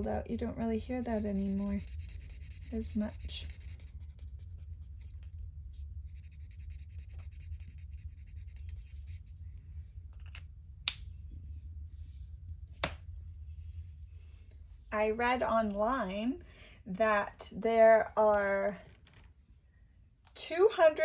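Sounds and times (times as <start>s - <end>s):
colouring strokes on paper: 0.0s - 9.4s
low hum: 0.0s - 18.8s.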